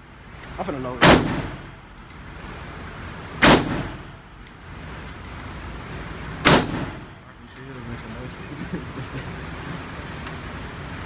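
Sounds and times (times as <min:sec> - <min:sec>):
gunshots with ringing tail: 0:00.9 - 0:01.7, 0:03.4 - 0:04.2, 0:06.4 - 0:07.2.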